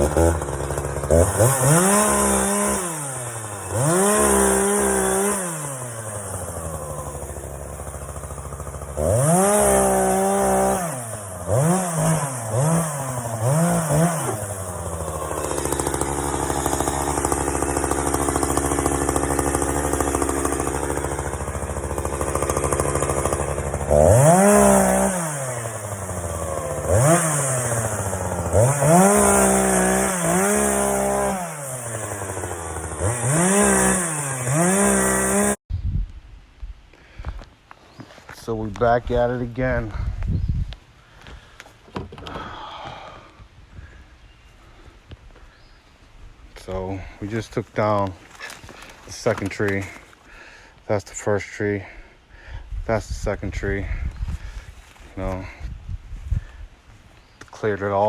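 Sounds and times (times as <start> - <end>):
chainsaw engine revving: 0.0 - 35.6, 46.6 - 50.6, 51.2 - 55.6, 57.5 - 58.0.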